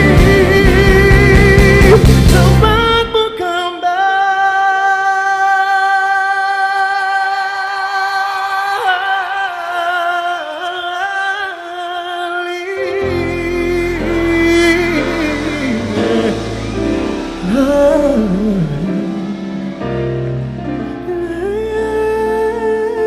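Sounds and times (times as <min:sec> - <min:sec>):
live pop band playing: 0:00.0 - 0:11.8, 0:12.5 - 0:23.0
person singing long note: 0:12.5 - 0:23.0.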